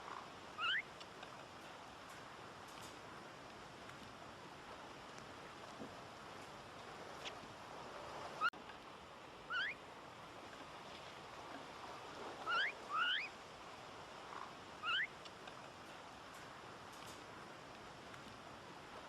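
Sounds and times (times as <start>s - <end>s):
wind or surf noise: 0.0s - 19.0s
bird whistled calls: 0.6s - 0.9s, 9.5s - 9.8s, 12.4s - 13.3s, 14.8s - 15.1s.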